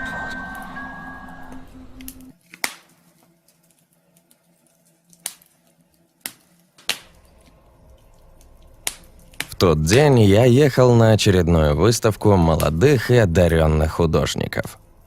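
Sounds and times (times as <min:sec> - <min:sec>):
intro music: 0:00.0 - 0:02.4
wood fire crackling: 0:01.6 - 0:15.0
sharp fire pops: 0:08.8 - 0:10.1.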